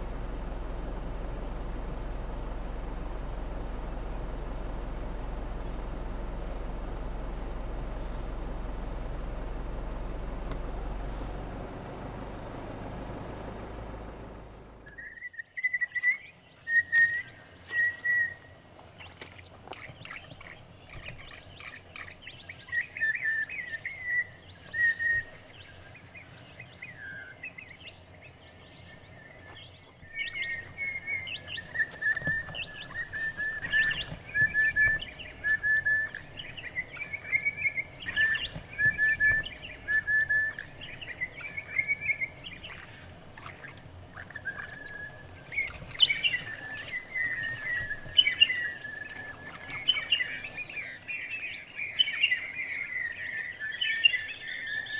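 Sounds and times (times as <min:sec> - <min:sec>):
birds chirping: 0:00.0 - 0:54.9
birds whistling: 0:14.8 - 0:54.9.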